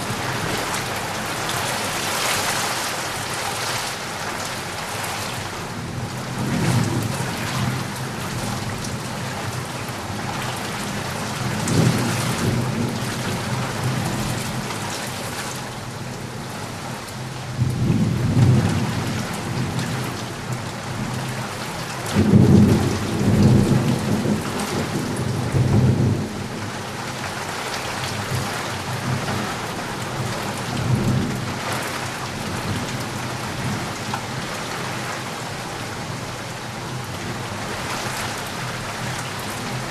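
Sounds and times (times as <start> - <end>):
heavy rain hissing: 0.0 - 14.9.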